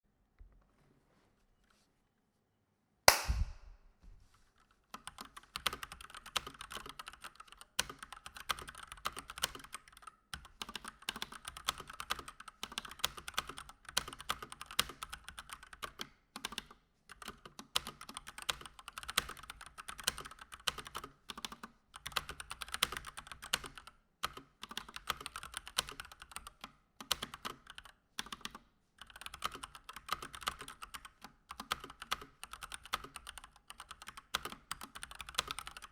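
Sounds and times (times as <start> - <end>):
sharp knock: 3.1 - 3.8
typing on mechanical keyboard: 4.9 - 35.9.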